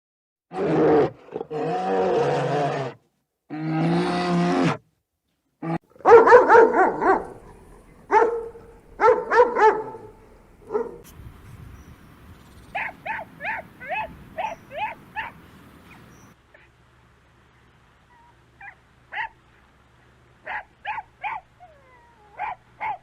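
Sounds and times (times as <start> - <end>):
dog barking: 6.0 - 11.1, 12.8 - 15.4, 18.6 - 19.4, 20.5 - 21.5, 22.4 - 23.0
high-pitched dog yips: 12.8 - 15.4, 20.5 - 23.0.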